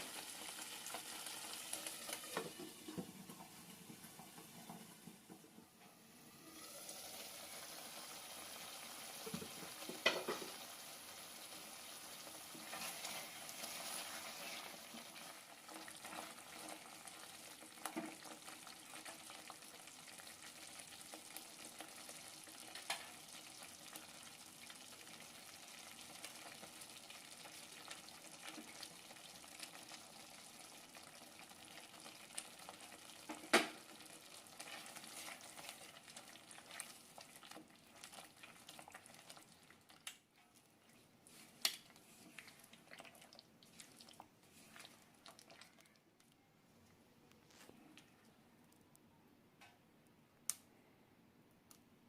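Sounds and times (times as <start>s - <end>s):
food sizzling in a pan: 0.0s - 5.4s, 6.0s - 40.0s.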